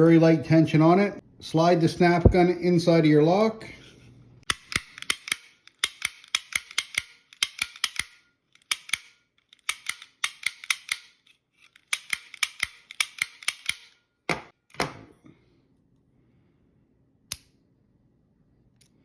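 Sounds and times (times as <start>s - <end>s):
pick gun snapping in lock: 4.5s - 14.0s.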